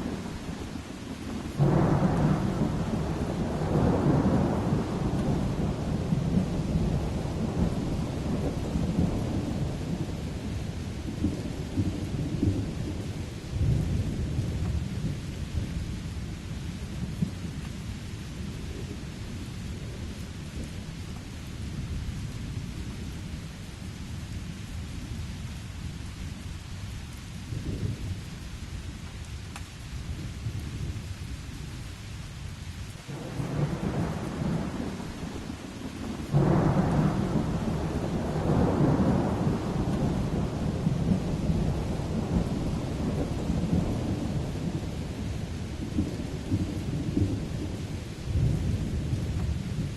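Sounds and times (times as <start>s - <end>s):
rolling thunder: 0.0s - 23.0s, 33.1s - 49.9s
steady rain: 0.0s - 49.9s.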